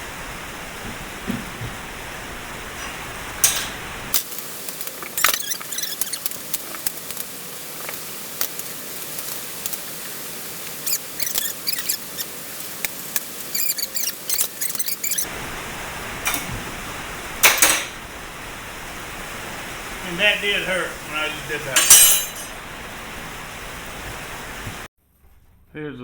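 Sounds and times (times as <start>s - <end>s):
metallic clatter: 21.8s - 22.6s.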